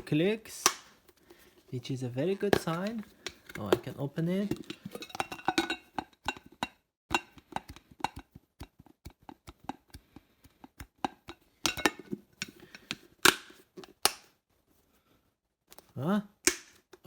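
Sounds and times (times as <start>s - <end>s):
loud sharp plastic snap: 0.6s - 1.0s, 13.2s - 14.3s, 16.4s - 17.0s.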